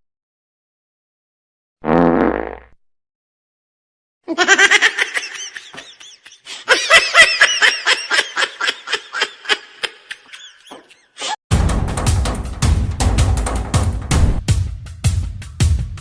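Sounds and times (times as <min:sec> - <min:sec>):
person laughing hard: 0:04.3 - 0:11.4.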